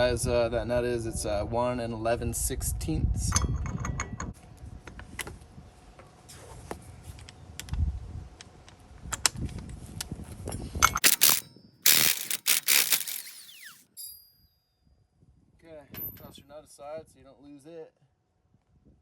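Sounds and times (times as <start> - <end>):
metal clicks: 10.8 - 14.2
socket ratchet clicking: 10.9 - 14.2.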